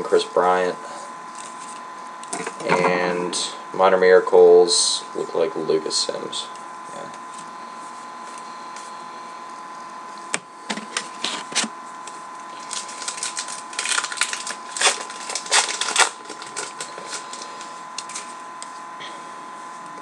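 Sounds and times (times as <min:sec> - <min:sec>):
wrapper crinkling: 0:12.5 - 0:18.4.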